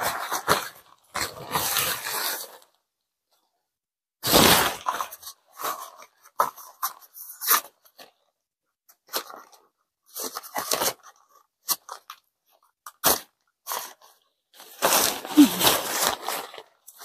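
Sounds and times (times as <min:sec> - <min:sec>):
fabric rustling: 0:14.8 - 0:16.6.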